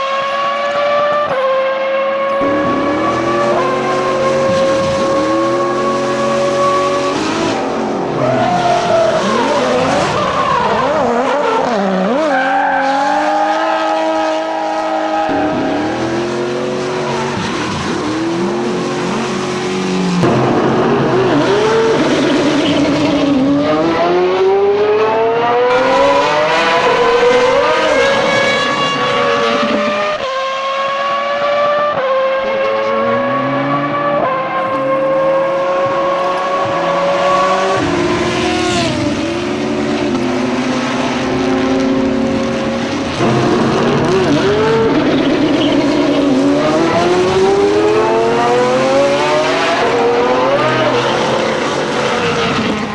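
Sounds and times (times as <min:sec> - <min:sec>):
car engines revving: 0:00.0 - 0:52.9
tyres squealing and skidding: 0:02.4 - 0:24.1, 0:35.7 - 0:52.9.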